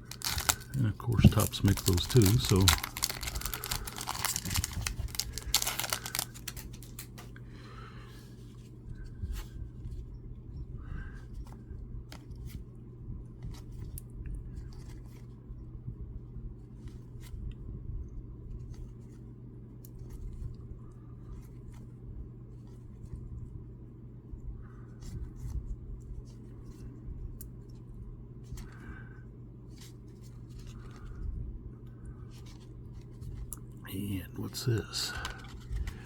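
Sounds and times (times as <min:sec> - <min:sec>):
trading cards flipped through: 0:00.0 - 0:07.4.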